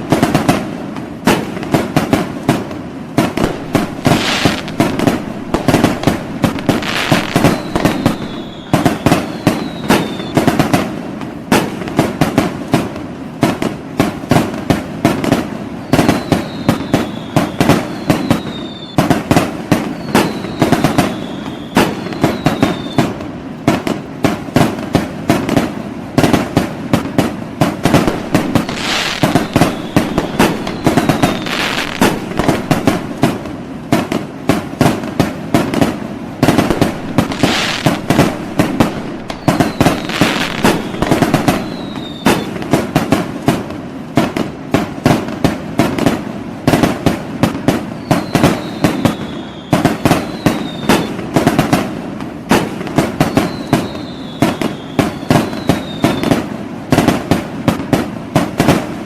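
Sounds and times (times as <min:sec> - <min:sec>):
fireworks bangs and crackling: 0:00.0 - 0:59.0
short falling whistles: 0:03.4 - 0:10.5, 0:15.8 - 0:19.1, 0:19.8 - 0:23.2, 0:28.0 - 0:33.4, 0:36.4 - 0:42.6, 0:47.9 - 0:51.2, 0:53.2 - 0:56.5.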